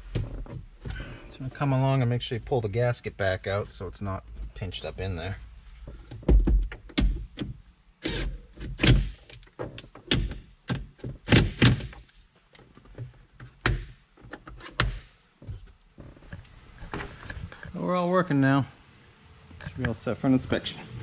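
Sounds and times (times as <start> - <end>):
knocks and clicks of hand work: 5.9 - 7.6.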